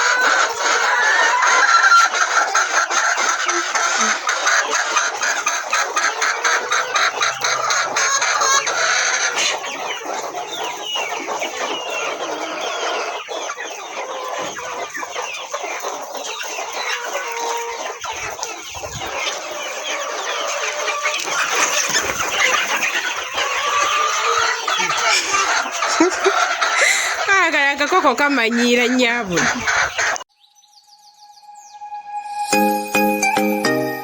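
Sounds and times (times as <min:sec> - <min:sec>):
hens clucking: 0:00.0 - 0:30.3.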